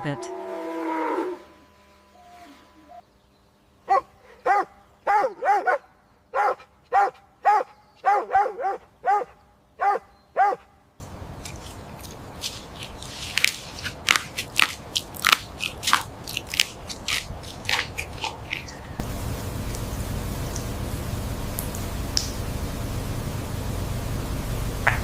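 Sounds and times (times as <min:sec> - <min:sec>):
dog barking: 0:03.9 - 0:10.7
crackling crunching noise: 0:11.0 - 0:25.0.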